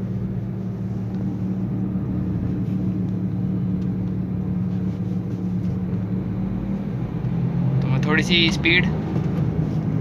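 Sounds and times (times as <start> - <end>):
wheel bearing hum: 0.0 - 8.0.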